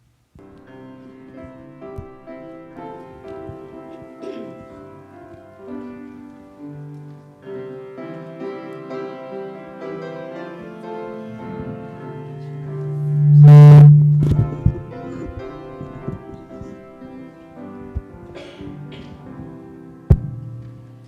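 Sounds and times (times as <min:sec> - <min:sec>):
hymn music on piano: 0:00.0 - 0:21.0
low sustained bass note: 0:12.5 - 0:16.8.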